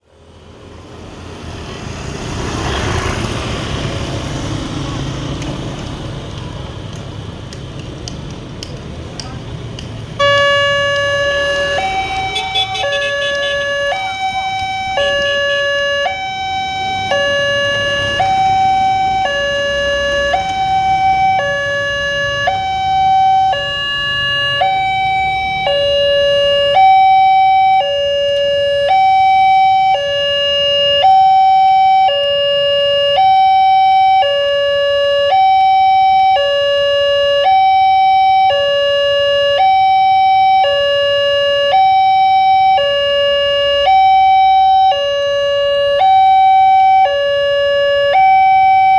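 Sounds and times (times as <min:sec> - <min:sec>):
two-tone level crossing siren: 0:10.2 - 0:48.9.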